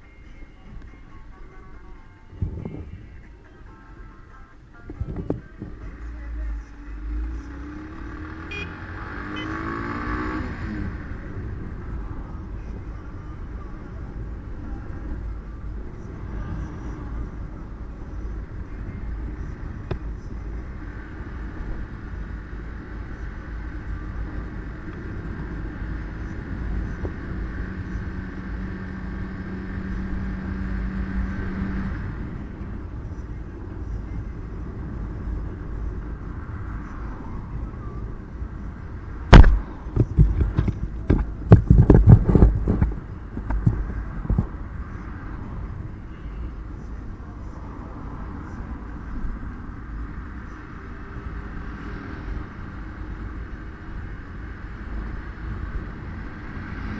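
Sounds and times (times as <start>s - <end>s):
car engine and tyre rumble: 0.0s - 56.9s.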